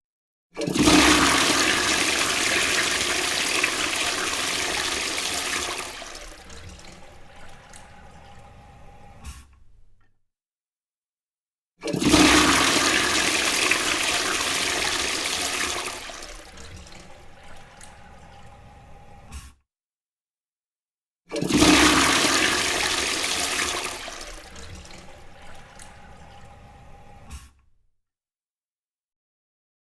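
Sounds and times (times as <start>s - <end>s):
toilet flushing: 0.6s - 9.5s, 11.8s - 19.5s, 21.3s - 27.6s.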